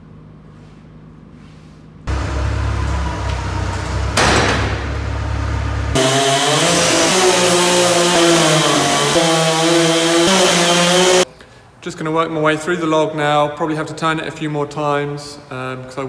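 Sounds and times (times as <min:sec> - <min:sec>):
sawmill engine running: 0:02.1 - 0:11.3
saw blade hissing through wood: 0:06.0 - 0:11.3.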